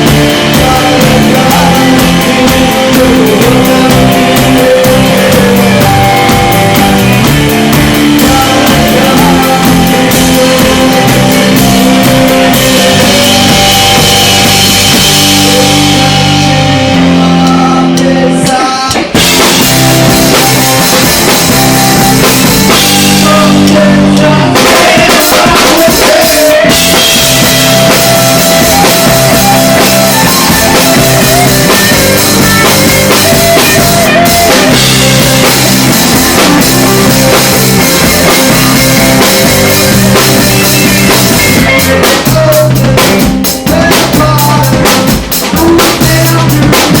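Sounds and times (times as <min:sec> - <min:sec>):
rock band playing live: 0:00.0 - 0:47.0.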